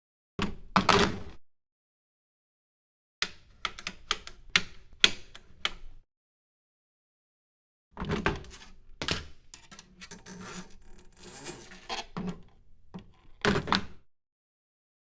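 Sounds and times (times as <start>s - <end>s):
scraping and rubbing: 9.6s - 12.4s.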